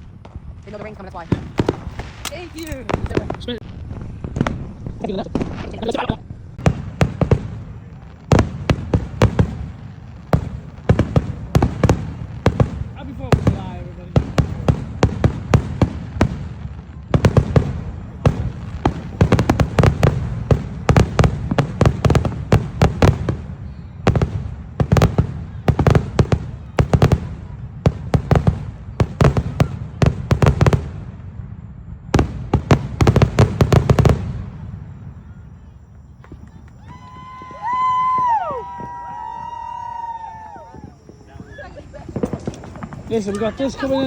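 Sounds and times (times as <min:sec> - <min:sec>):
fireworks bangs: 0:00.0 - 0:44.0.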